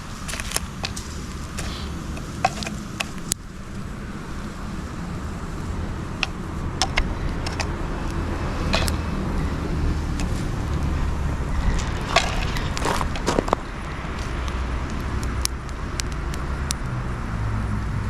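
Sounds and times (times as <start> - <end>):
sharp pops of fire: 0.0 - 17.0
bonfire crackling: 0.0 - 17.8
steady low rumble: 0.0 - 18.0.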